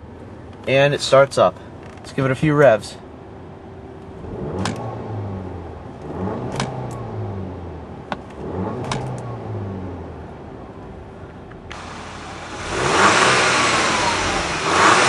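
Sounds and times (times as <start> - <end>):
car engine revving: 4.1 - 10.5, 11.7 - 15.0.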